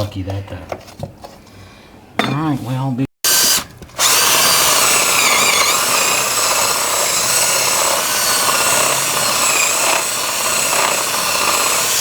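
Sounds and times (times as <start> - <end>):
power drill whining: 3.3 - 12.0.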